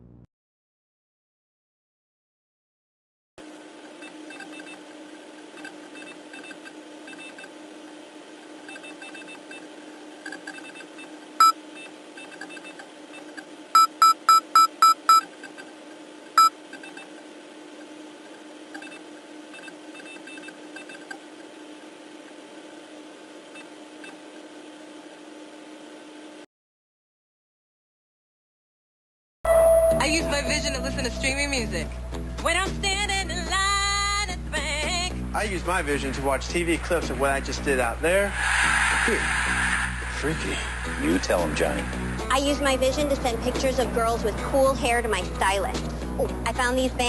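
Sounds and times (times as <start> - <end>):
short electronic beeps: 13.8 - 15.3
low electronic drone: 36.5 - 44.4
faint flickering high tones: 37.4 - 43.5.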